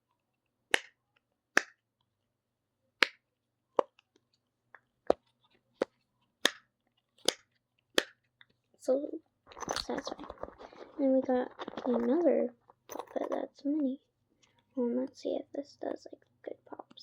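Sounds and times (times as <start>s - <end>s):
fidget toy popping: 0.7s - 1.0s, 1.6s - 1.8s, 3.0s - 3.2s, 5.0s - 8.2s.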